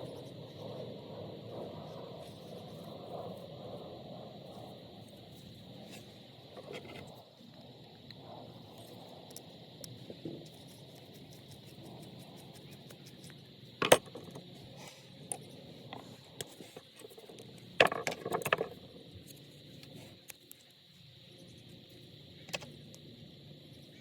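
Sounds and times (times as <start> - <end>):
small hard parts clicking: 17.0 - 18.8.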